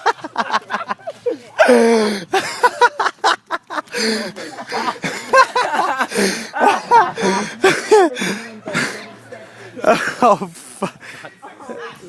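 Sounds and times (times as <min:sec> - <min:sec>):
people laughing: 0:00.0 - 0:12.0.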